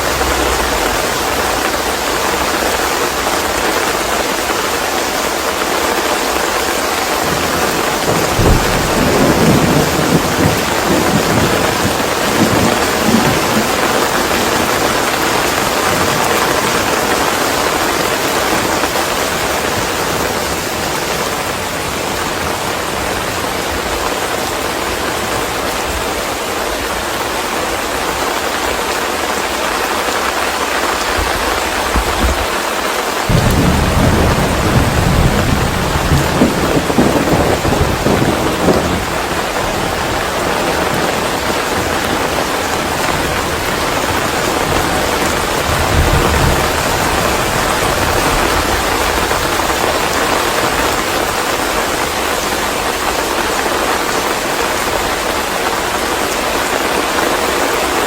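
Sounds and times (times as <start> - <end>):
thunder rumbling: 0.0 - 5.2, 6.2 - 26.0, 30.7 - 53.8
heavy rain: 0.0 - 58.0.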